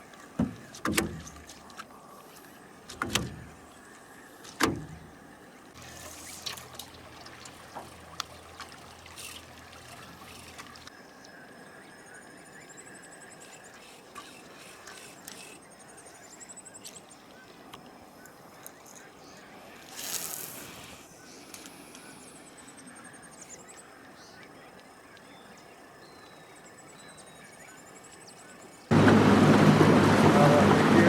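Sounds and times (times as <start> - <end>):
bird singing: 6.6 - 20.3, 21.1 - 28.9.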